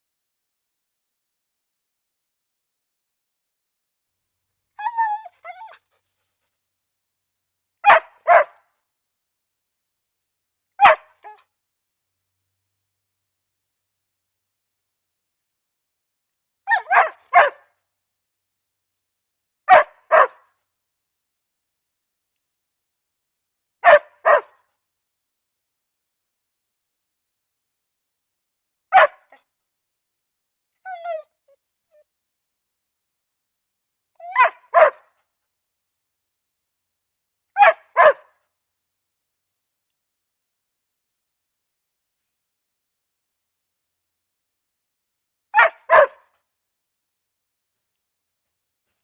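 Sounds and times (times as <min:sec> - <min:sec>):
dog barking: 0:07.8 - 0:08.7, 0:10.8 - 0:11.4, 0:16.7 - 0:17.7, 0:19.7 - 0:20.5, 0:23.8 - 0:24.6, 0:28.9 - 0:29.4, 0:34.2 - 0:35.2, 0:37.6 - 0:38.4, 0:45.6 - 0:46.3.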